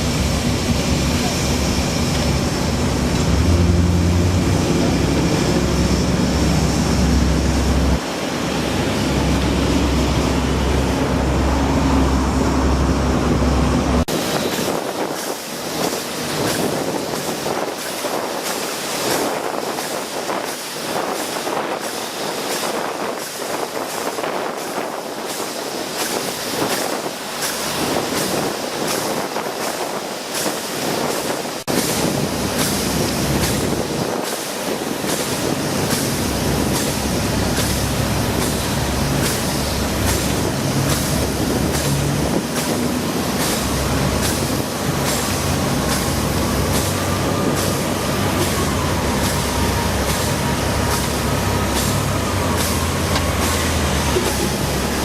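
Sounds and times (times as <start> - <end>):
engine running with low rumble: 0.0 - 18.2, 31.6 - 55.0
outdoor noise rush: 0.0 - 55.0
wind buffeting microphone: 0.0 - 55.0.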